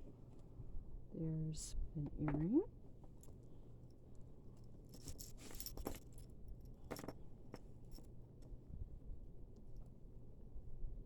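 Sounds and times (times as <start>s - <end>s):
jewelry clinking and jingling: 4.6s - 8.1s.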